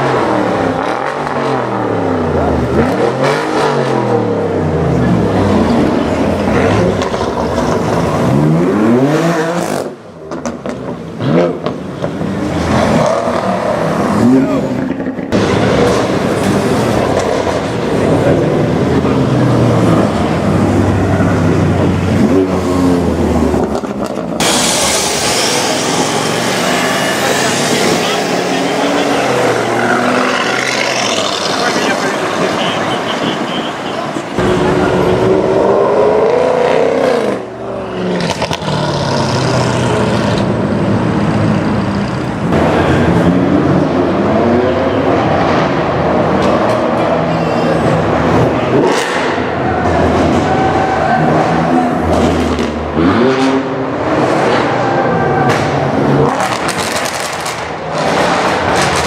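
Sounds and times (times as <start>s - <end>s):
loud car engine exhaust: 0.0s - 59.0s
exhaust crackles and pops: 56.3s - 59.0s.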